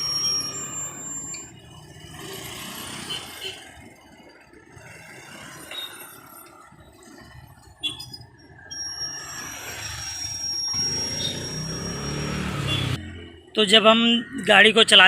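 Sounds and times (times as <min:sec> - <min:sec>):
high-pitched brake whine: 0:00.0 - 0:02.4, 0:07.9 - 0:13.2.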